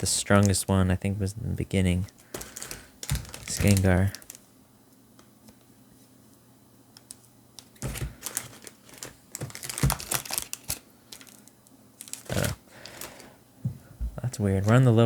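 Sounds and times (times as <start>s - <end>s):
foil wrapper crinkling: 2.1s - 4.5s, 7.6s - 13.3s.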